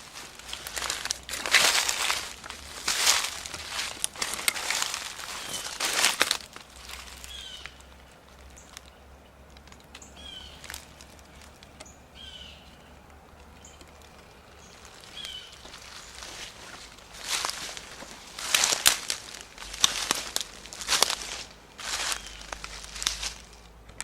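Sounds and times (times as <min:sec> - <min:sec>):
loud rustle: 0:00.0 - 0:08.9, 0:13.9 - 0:24.0
bird chirping: 0:00.0 - 0:24.0
low steady hum: 0:00.0 - 0:24.0
faint clicks: 0:00.2 - 0:12.0, 0:12.7 - 0:24.0.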